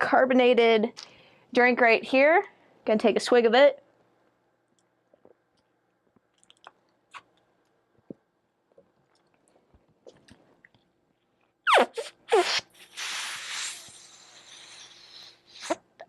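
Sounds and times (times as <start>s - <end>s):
swallowing and mouth clicks: 4.7s - 11.5s.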